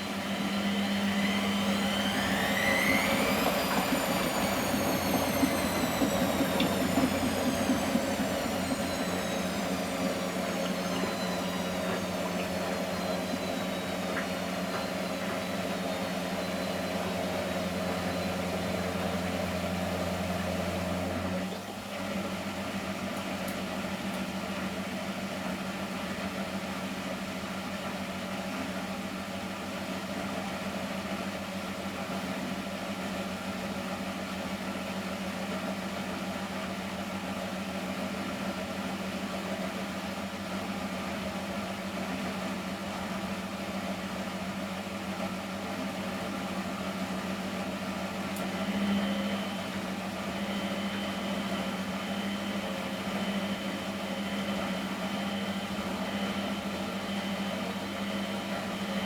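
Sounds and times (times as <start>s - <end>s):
high whine falling in pitch: 0.0s - 19.2s
washing machine humming: 0.0s - 27.2s, 29.2s - 59.0s.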